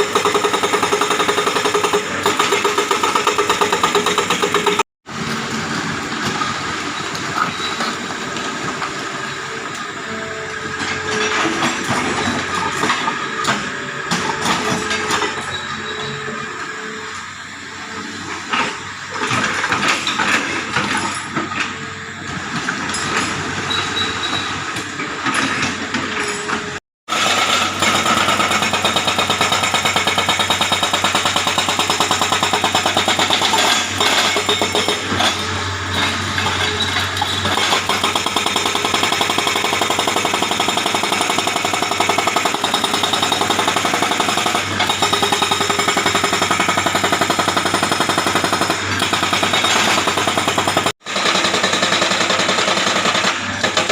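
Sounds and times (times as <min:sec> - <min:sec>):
hydraulic breaker hammering rock: 0:00.0 - 0:04.8, 0:25.3 - 0:53.9
excavator engine: 0:00.0 - 0:53.9.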